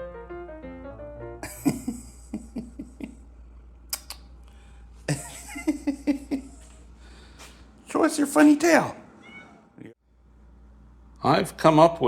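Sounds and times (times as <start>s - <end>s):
piano phrase: 0.0s - 2.3s.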